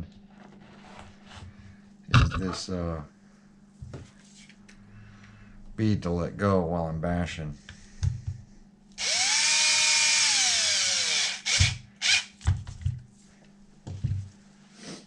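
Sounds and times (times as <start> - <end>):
power drill whining: 9.0 - 12.3.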